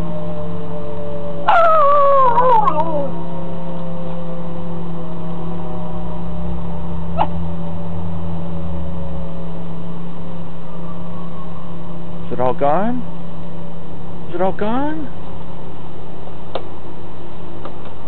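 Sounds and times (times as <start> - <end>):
steady siren tone: 0.0 - 16.2
dog howling: 1.4 - 4.2.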